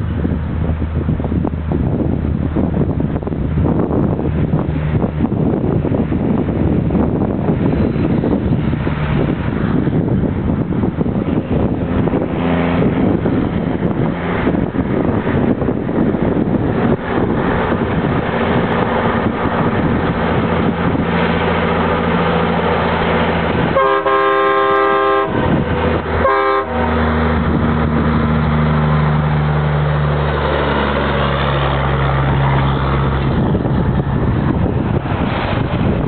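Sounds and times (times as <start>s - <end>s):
diesel engine running: 0.0s - 36.0s
chime train horn blast: 23.8s - 25.6s, 26.2s - 27.0s.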